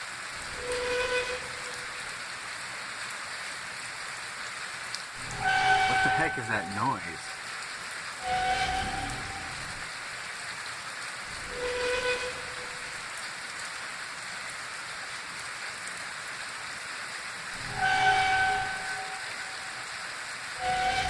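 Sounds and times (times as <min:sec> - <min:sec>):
distant horn-like tones: 0:00.4 - 0:02.1, 0:05.2 - 0:07.4, 0:08.2 - 0:09.9, 0:11.4 - 0:13.0, 0:17.6 - 0:20.0, 0:20.6 - 0:21.0.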